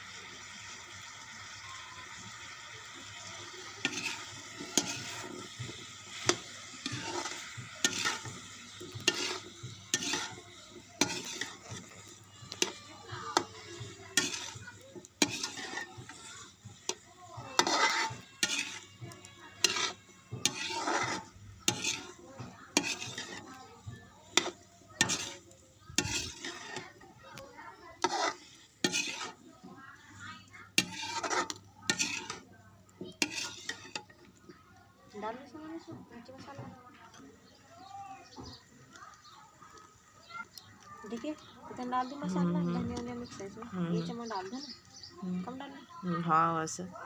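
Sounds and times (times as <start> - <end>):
food sizzling in a pan: 0.0 - 47.0
spatula scraping and knocking pan: 3.6 - 34.6, 35.8 - 38.7.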